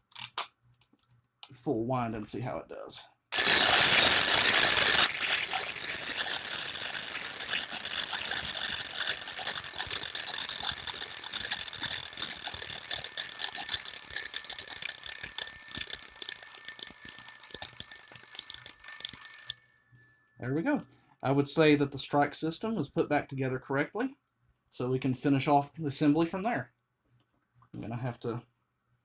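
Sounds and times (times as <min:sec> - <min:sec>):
alarm clock bell ringing: 0:03.4 - 0:20.0.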